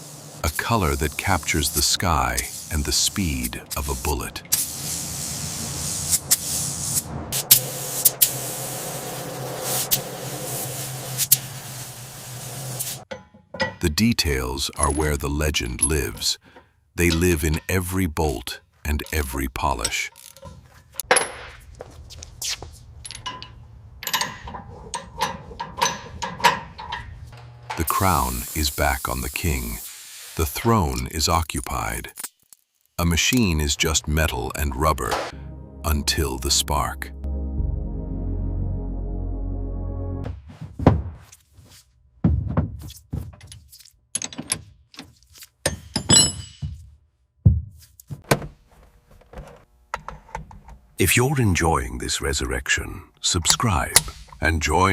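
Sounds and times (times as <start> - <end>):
metal tools clinking and tapping: 13.1 - 13.8, 19.8 - 21.6, 23.0 - 27.4, 44.1 - 46.8.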